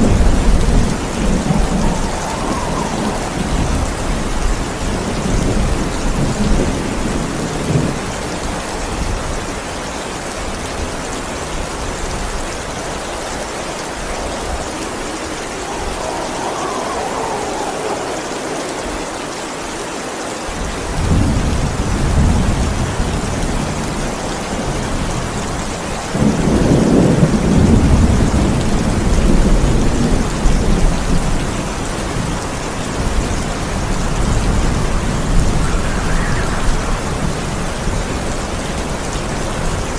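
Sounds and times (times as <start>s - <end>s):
thunder rumble: 0.0s - 9.2s, 13.9s - 39.9s
steady rain: 0.0s - 39.9s.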